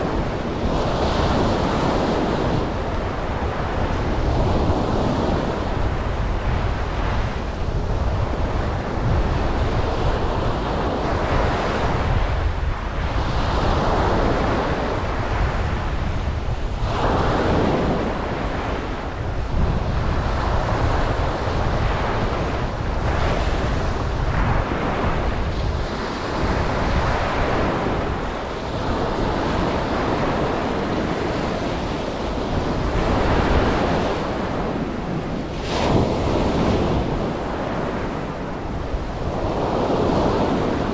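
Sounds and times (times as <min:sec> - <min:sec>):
ocean waves breaking on beach: 0:00.0 - 0:40.9
wind on microphone: 0:00.0 - 0:40.9.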